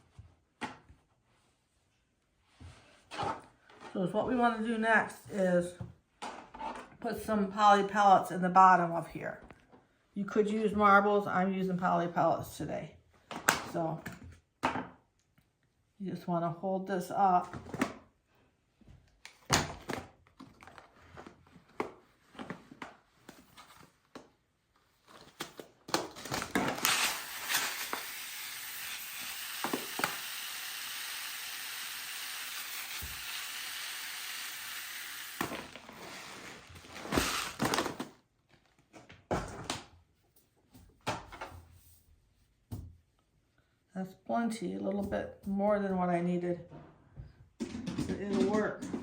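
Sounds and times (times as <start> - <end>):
plastic pellets pouring hiss: 26.7 - 37.8
fabric and bag rustling: 35.6 - 38.7.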